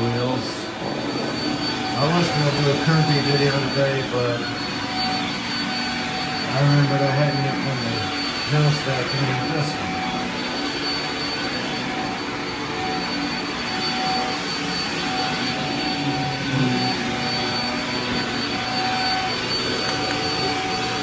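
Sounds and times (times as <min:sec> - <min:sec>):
vacuum cleaner running: 0:00.0 - 0:21.0.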